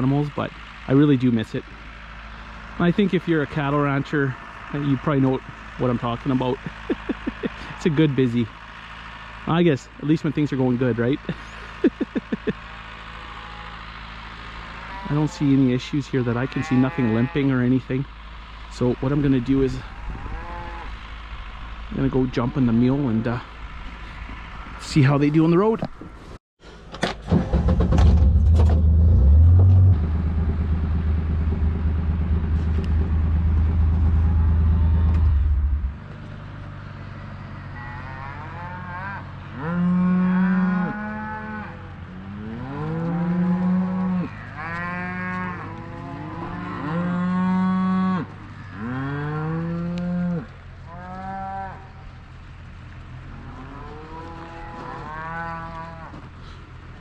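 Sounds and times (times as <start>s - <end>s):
vehicle engine running: 0.0s - 26.4s, 27.2s - 57.0s
cattle mooing: 13.2s - 13.9s, 14.7s - 15.7s, 16.3s - 17.8s, 19.7s - 21.1s, 37.7s - 52.0s, 53.2s - 56.3s.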